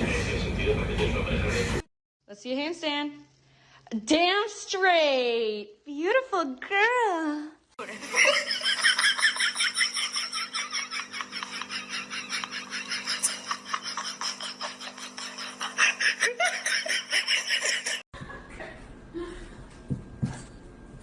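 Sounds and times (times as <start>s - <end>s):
person laughing hard: 7.8s - 18.0s.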